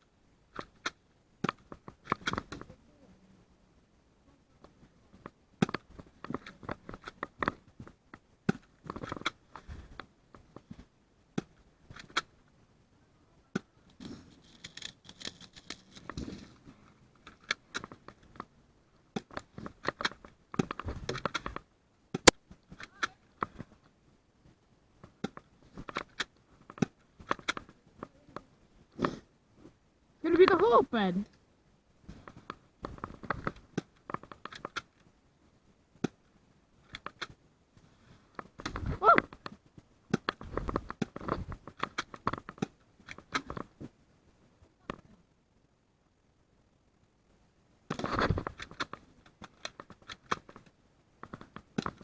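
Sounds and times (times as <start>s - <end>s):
rustling: 13.5s - 45.2s, 47.9s - 52.0s
scuffs and scrapes: 14.0s - 17.0s.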